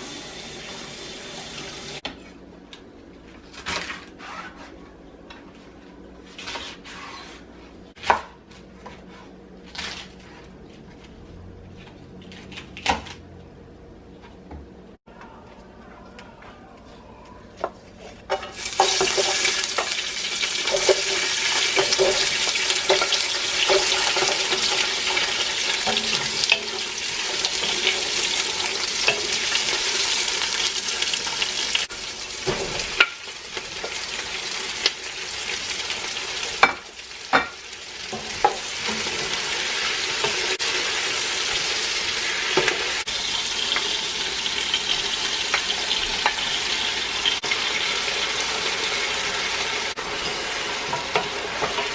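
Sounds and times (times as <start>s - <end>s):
food sizzling in a pan: 18.4s - 51.9s.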